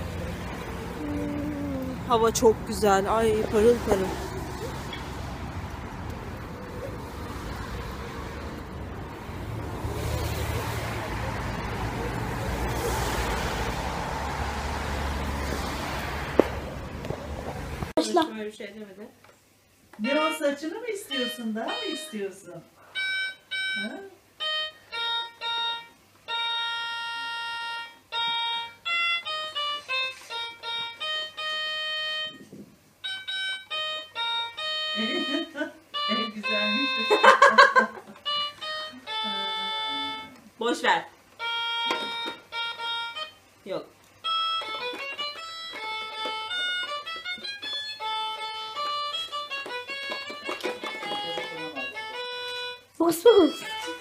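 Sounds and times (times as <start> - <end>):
electronic keyboard notes: 0.0 - 5.2, 20.0 - 22.4, 23.0 - 40.5, 41.3 - 54.0.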